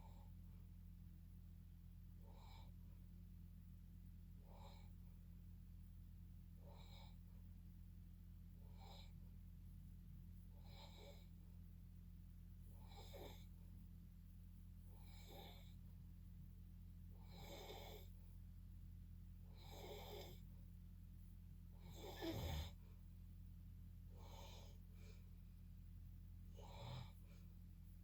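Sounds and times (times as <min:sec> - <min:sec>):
person snoring softly: 0:00.0 - 0:00.4, 0:02.2 - 0:03.0, 0:04.4 - 0:05.0, 0:06.6 - 0:07.3, 0:08.6 - 0:09.3, 0:10.5 - 0:11.4, 0:12.7 - 0:13.6, 0:14.9 - 0:15.8, 0:17.1 - 0:18.2, 0:19.4 - 0:20.5, 0:21.7 - 0:22.9, 0:24.1 - 0:25.2, 0:26.5 - 0:27.4
low electrical hum: 0:00.0 - 0:28.0
snort: 0:02.2 - 0:02.8, 0:04.4 - 0:04.9, 0:06.6 - 0:07.2, 0:08.7 - 0:09.2, 0:10.6 - 0:11.3, 0:12.8 - 0:13.5, 0:14.9 - 0:15.8, 0:17.2 - 0:18.1, 0:19.5 - 0:20.4, 0:21.8 - 0:22.8, 0:24.2 - 0:24.8, 0:26.5 - 0:27.3.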